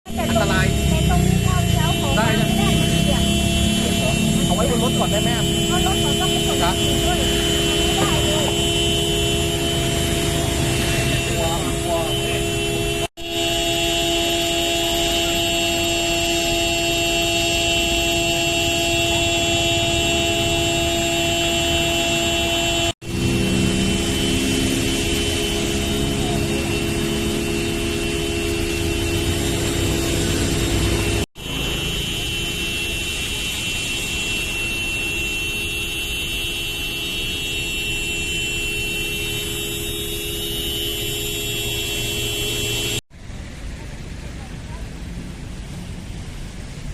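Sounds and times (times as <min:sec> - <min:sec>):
vehicle engines running: 0:00.1 - 0:13.1, 0:17.6 - 0:32.6.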